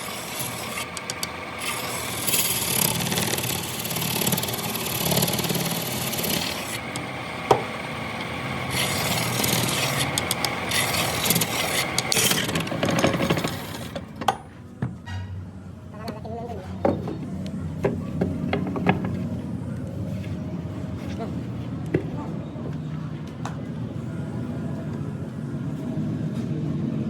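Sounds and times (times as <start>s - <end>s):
scraping and rubbing wood: 0.0s - 14.0s
power tool motor hum: 0.0s - 14.1s.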